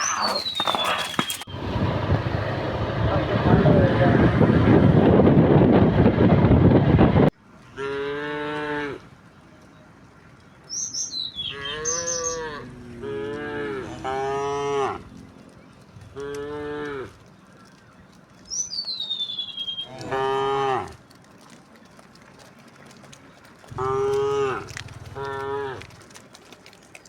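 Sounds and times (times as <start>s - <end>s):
bird whistle: 0.0s - 1.4s, 18.5s - 20.0s
cattle mooing: 0.0s - 1.4s, 7.8s - 9.0s, 11.4s - 15.4s, 16.0s - 17.2s, 19.8s - 21.0s, 23.7s - 26.2s.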